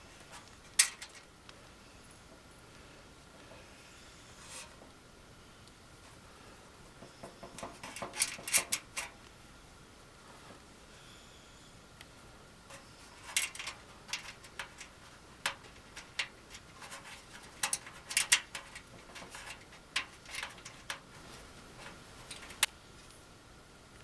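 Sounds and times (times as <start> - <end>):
small metal hardware clinking: 7.2 - 9.1, 12.7 - 22.7.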